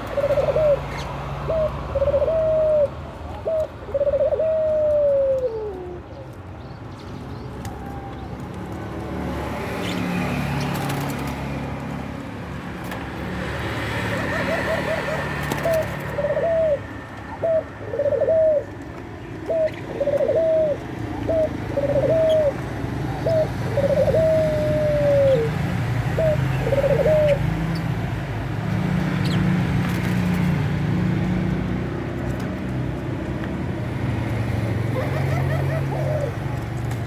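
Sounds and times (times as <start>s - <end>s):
dove cooing: 0.0s - 6.2s, 14.1s - 18.8s, 19.4s - 27.7s, 34.9s - 36.6s.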